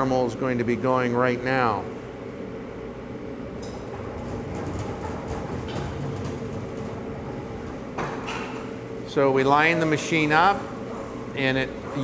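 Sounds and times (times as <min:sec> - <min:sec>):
machinery rumble: 0:02.2 - 0:08.0.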